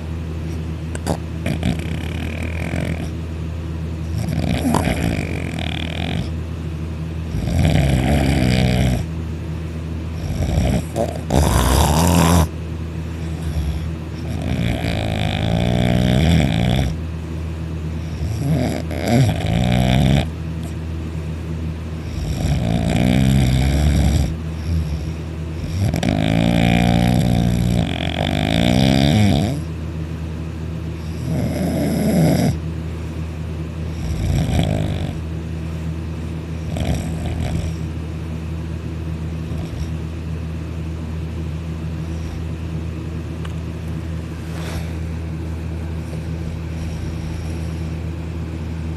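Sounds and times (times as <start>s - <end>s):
steady low hum: 0.0s - 48.9s
loud snoring: 0.9s - 3.2s, 4.1s - 6.4s, 7.3s - 9.1s, 10.2s - 12.5s, 13.2s - 17.0s, 18.0s - 20.7s, 22.0s - 29.7s, 31.0s - 32.6s, 33.9s - 35.2s, 36.6s - 37.9s, 39.5s - 40.0s, 46.0s - 47.9s.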